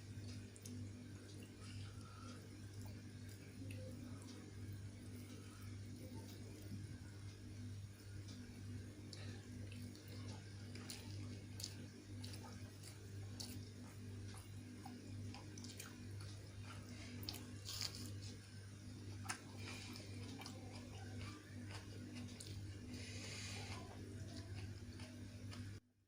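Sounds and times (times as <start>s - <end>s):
steady low hum: 0.0s - 26.0s
person chewing food: 8.1s - 25.8s.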